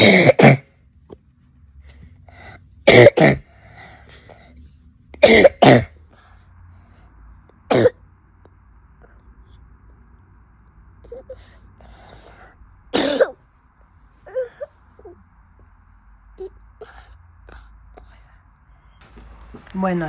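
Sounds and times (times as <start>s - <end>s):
boy coughing: 0.0s - 0.7s, 2.9s - 3.5s, 5.2s - 5.9s, 7.7s - 8.0s, 12.9s - 13.4s.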